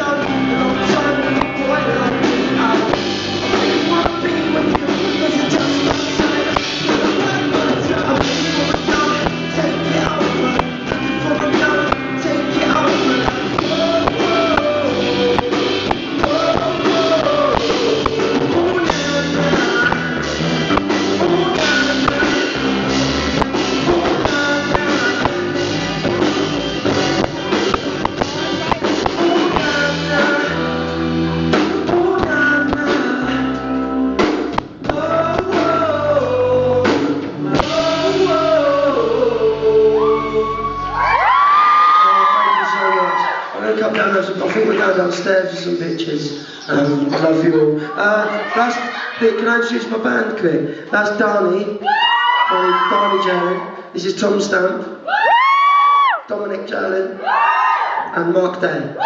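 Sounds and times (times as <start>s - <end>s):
live rock band playing: 0.0s - 42.6s
man singing: 0.0s - 54.9s.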